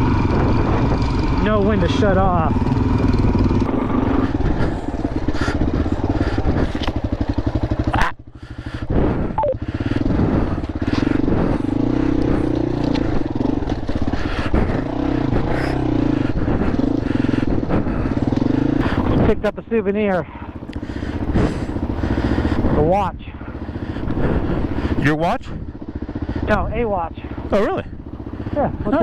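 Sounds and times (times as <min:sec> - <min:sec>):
dirt bike engine revving: 0:00.0 - 0:29.0.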